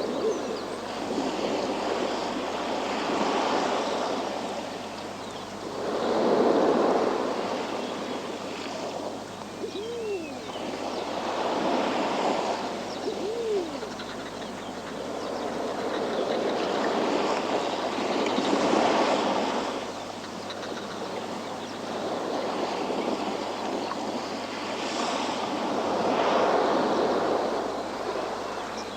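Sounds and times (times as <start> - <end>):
low hooting call: 0.0 - 3.2, 9.2 - 15.0.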